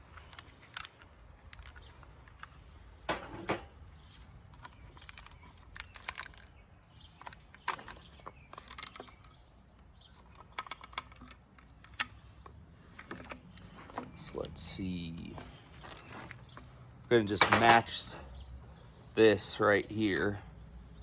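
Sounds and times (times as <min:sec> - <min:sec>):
small parts and tools clicking: 0:00.0 - 0:14.7.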